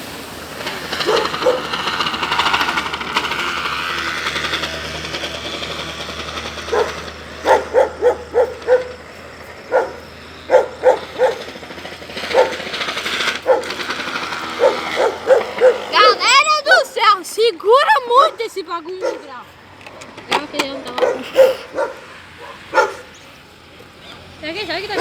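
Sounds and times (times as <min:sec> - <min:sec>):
dog barking: 0:01.0 - 0:01.7, 0:06.7 - 0:09.0, 0:09.6 - 0:11.5, 0:12.3 - 0:12.6, 0:13.4 - 0:13.8, 0:14.5 - 0:16.2, 0:19.0 - 0:19.3, 0:21.0 - 0:23.2.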